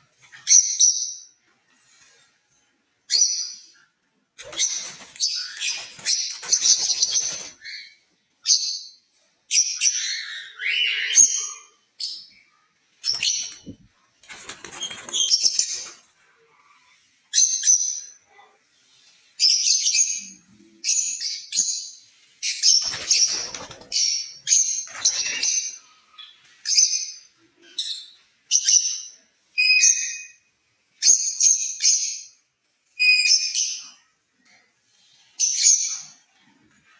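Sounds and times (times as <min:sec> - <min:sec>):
lovebirds chirping: 0:04.4 - 0:08.6, 0:13.0 - 0:16.0, 0:22.6 - 0:27.0.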